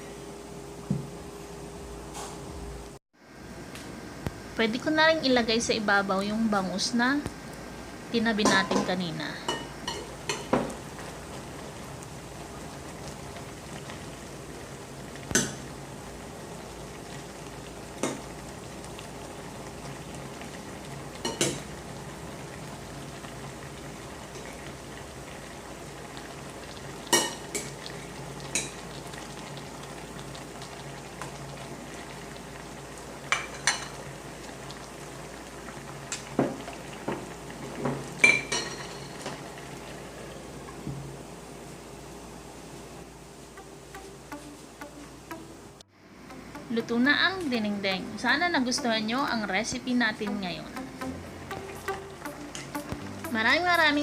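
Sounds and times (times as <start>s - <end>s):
pot of broth simmering: 9.4s - 47.4s.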